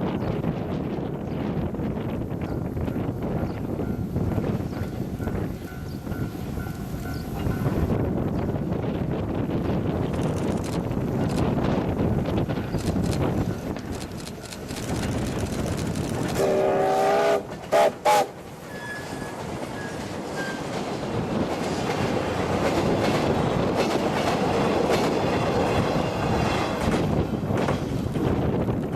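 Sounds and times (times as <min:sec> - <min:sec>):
train rumbling past: 0:00.0 - 0:28.9
train horn: 0:16.4 - 0:20.6.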